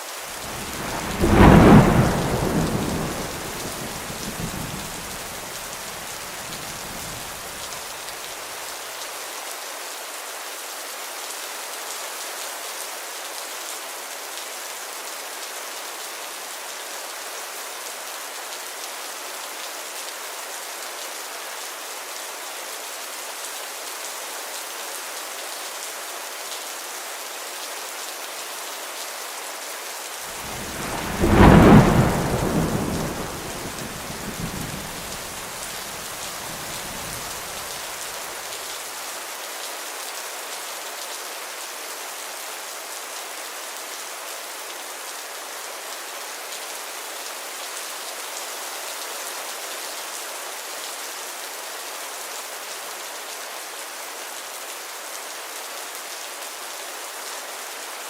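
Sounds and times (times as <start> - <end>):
heavy rain: 0.0 - 58.0
thunder: 0.4 - 7.5, 30.4 - 37.8.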